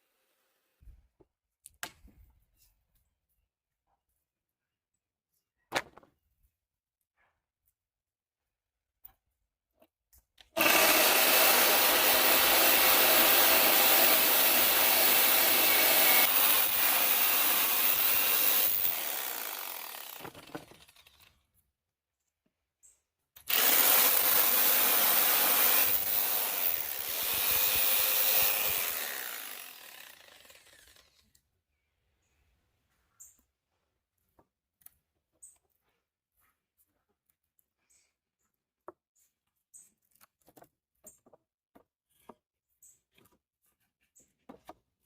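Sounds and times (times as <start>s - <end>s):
reciprocating saw cutting wood: 10.6s - 21.4s, 23.5s - 31.4s.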